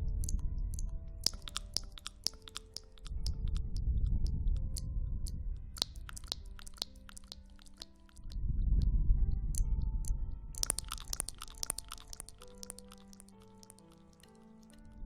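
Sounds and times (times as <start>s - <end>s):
crisp crackly clicks: 0.0s - 8.4s, 10.5s - 15.0s
low rumbling: 8.3s - 10.6s.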